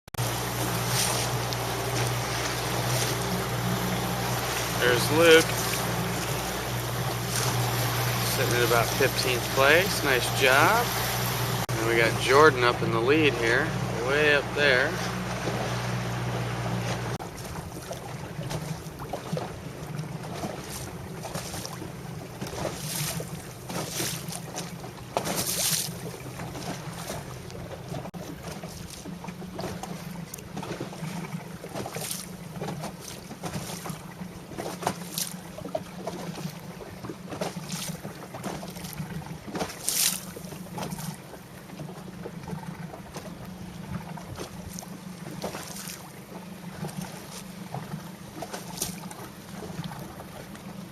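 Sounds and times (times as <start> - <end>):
low steady hum: 0.2 - 24.4.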